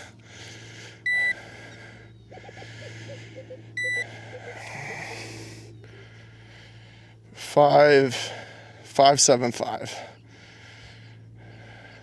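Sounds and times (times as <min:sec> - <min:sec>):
digital scale beeping: 0:01.1 - 0:01.4, 0:03.8 - 0:04.1.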